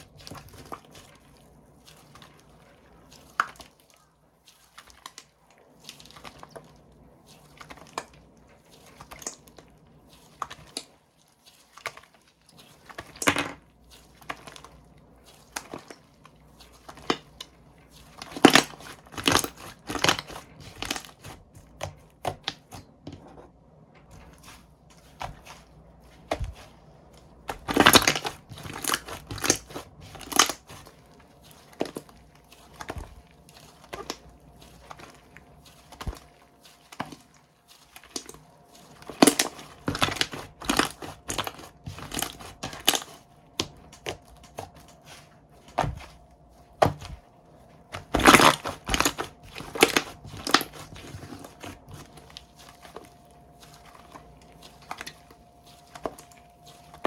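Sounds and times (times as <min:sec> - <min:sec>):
slime crackling and popping: 0:18.2 - 0:22.8, 0:27.4 - 0:37.2, 0:37.8 - 0:46.1, 0:47.9 - 0:57.0.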